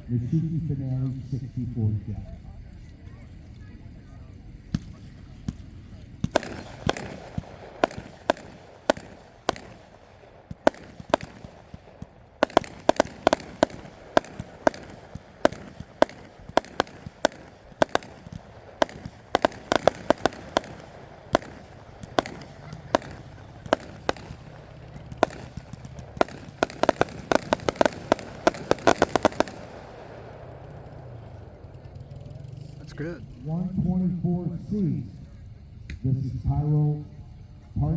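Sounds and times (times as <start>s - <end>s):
fireworks cake firing reports: 0.0s - 37.6s.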